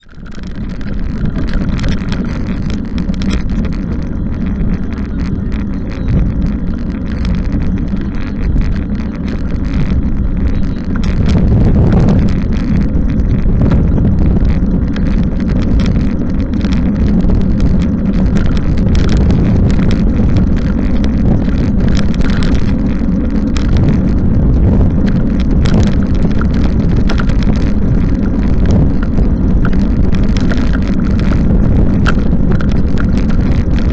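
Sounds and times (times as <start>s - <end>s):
tyre and road noise: 0.0s - 33.9s
wind rushing over microphone: 0.0s - 33.9s.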